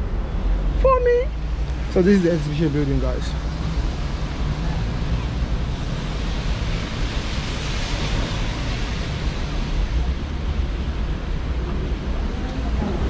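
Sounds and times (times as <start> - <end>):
city traffic: 0.0 - 13.0.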